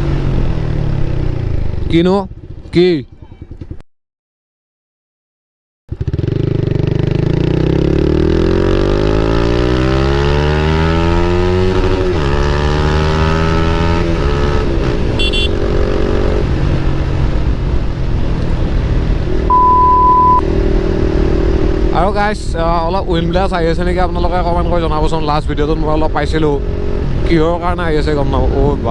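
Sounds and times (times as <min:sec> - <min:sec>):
motorcycle engine accelerating: 0:00.0 - 0:03.8, 0:05.9 - 0:28.9
high-pitched chirp: 0:19.5 - 0:20.4.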